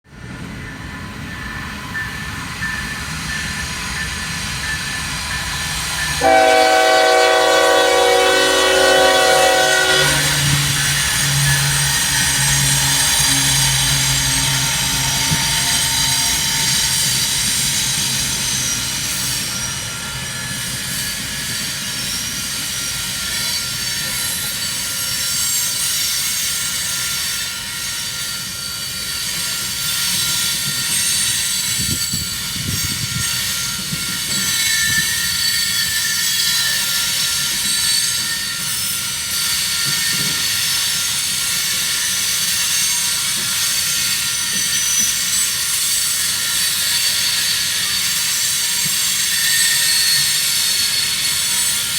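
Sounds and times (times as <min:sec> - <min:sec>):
train wheels rumbling on rails: 0:00.1 - 0:51.9
metallic wheel squealing: 0:00.8 - 0:26.6, 0:28.3 - 0:51.9
locomotive horn: 0:06.2 - 0:16.5.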